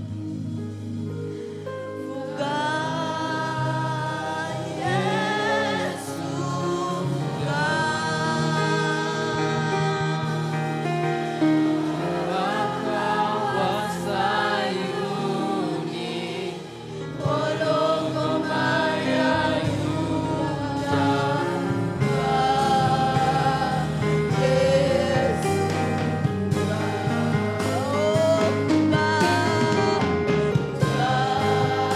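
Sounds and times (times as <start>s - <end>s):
gospel choir singing with instruments: 0.0s - 31.9s.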